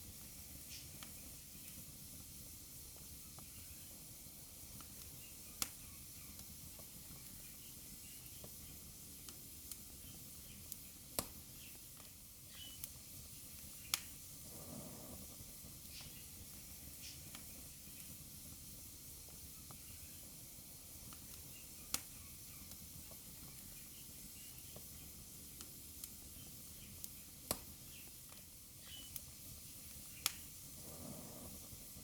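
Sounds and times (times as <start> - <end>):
wood fire crackling: 0.0 - 32.0
sharp fire pops: 10.7 - 14.3, 21.0 - 31.2.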